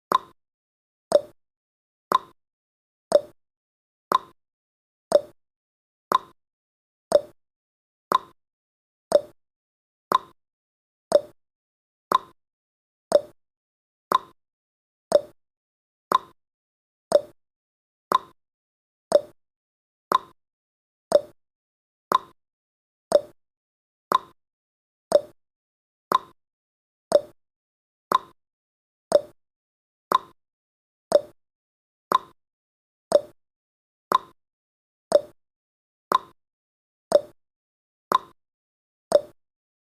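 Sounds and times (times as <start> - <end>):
timer ticking: 0.1 - 0.3, 1.1 - 1.3, 2.1 - 2.3, 3.1 - 3.3, 4.1 - 4.3, 5.1 - 5.3, 7.1 - 7.4, 8.1 - 8.4, 9.1 - 9.4, 10.1 - 10.4, 11.1 - 11.4, 12.1 - 12.4, 13.1 - 13.4, 15.1 - 15.4, 16.1 - 16.4, 17.1 - 17.3, 18.1 - 18.4, 19.1 - 19.4, 21.1 - 21.4, 23.1 - 23.4, 24.1 - 24.4, 25.1 - 25.4, 26.1 - 26.4, 27.1 - 27.4, 28.1 - 28.4, 29.1 - 29.4, 30.1 - 30.4, 31.1 - 31.4, 32.1 - 32.4, 33.1 - 33.4, 34.1 - 34.4, 35.1 - 35.4, 36.1 - 36.4, 37.1 - 37.4, 38.1 - 38.4, 39.1 - 39.4.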